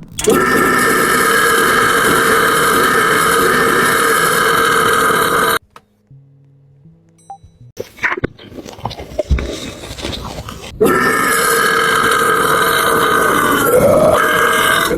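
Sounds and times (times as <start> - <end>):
long loud burp: 0.2 - 5.6, 10.8 - 14.9
mouth clicks and noises: 7.8 - 12.9.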